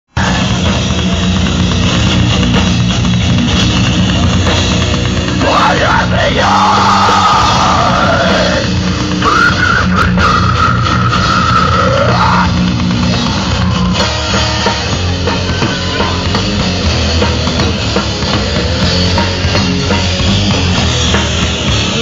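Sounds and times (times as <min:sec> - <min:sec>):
heavy rock band: 0:00.1 - 0:22.0.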